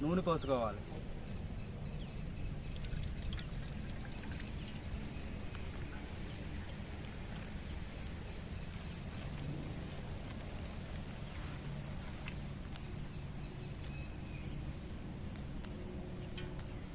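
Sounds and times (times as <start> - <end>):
oil pouring: 2.7 - 4.9.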